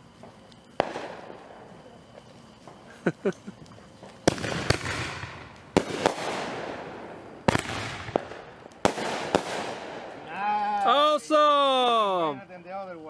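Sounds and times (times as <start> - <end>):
firework bangs: 0.0 - 10.4
crackling hiss: 0.0 - 13.0.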